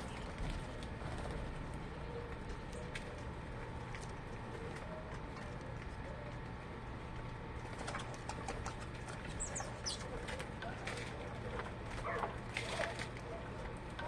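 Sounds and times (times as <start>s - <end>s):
birds calling: 0.0s - 3.3s, 7.8s - 14.0s
steady low hum: 0.0s - 14.0s.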